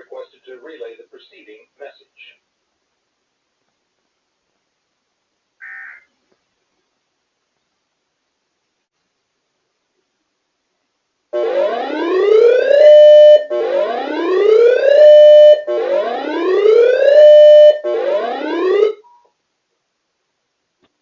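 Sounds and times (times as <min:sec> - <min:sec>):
electronic siren rising whoops: 0:11.4 - 0:19.0.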